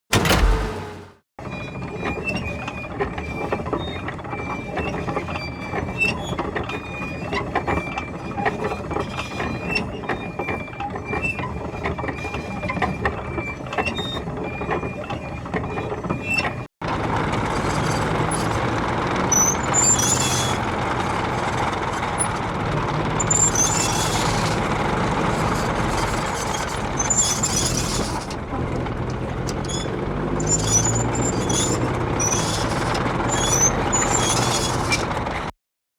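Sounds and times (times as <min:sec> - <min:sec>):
tank engine running: 0:00.1 - 0:35.5
tank tracks rattling and clicking: 0:02.0 - 0:35.5
high squeak: 0:19.3 - 0:22.4, 0:23.2 - 0:28.4, 0:29.5 - 0:35.1.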